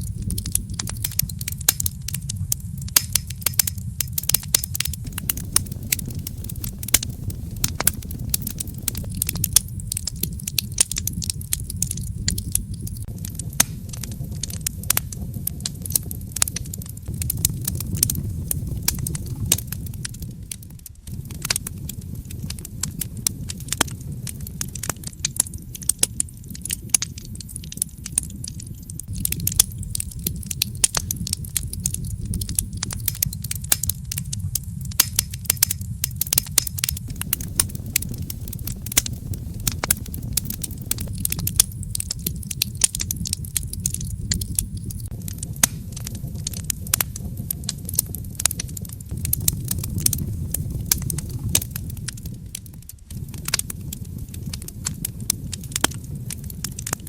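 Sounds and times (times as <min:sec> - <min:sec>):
low rumble of flames: 0:00.0 - 0:57.0
wood fire crackling and popping: 0:00.0 - 0:57.0.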